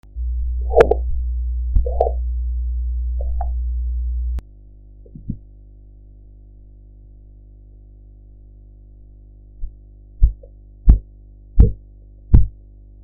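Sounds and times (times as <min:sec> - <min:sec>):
steady low hum: 0:00.0 - 0:13.0
soft heartbeat thumps: 0:09.6 - 0:12.6.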